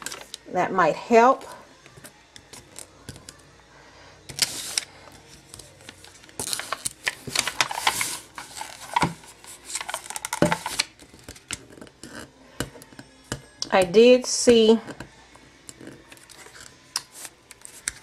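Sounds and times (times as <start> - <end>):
tape pulled off and crinkled: 0.0 - 0.4, 4.3 - 11.9, 16.1 - 18.0.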